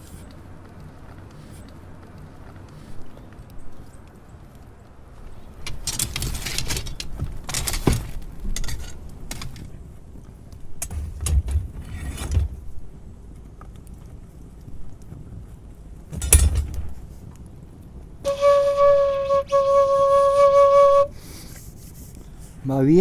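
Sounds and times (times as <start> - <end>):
metallic clinks and knocks: 5.6 - 9.7, 16.1 - 17.1
metal scraping: 10.8 - 12.6.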